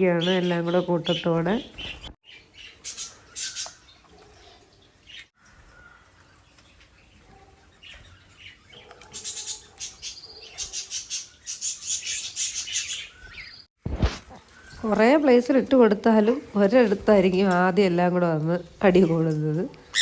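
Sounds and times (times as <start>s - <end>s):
small parrots chirping: 1.8s - 4.0s, 7.8s - 13.7s.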